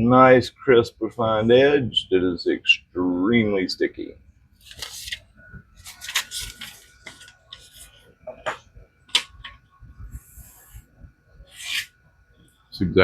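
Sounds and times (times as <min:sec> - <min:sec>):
knife scraping strokes: 0:10.2 - 0:12.0.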